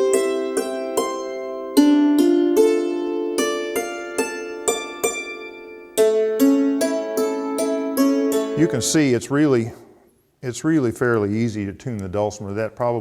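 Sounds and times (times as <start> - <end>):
hammered dulcimer arpeggios: 0.0 - 9.0.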